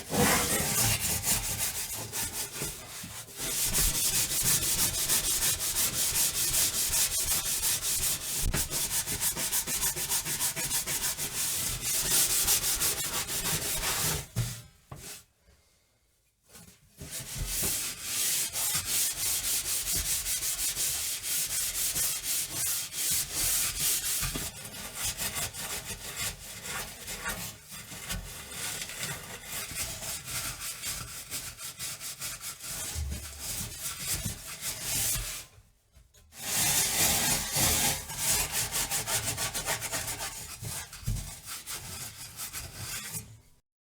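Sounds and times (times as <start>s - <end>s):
scrubbing an oven: 0.0s - 15.2s.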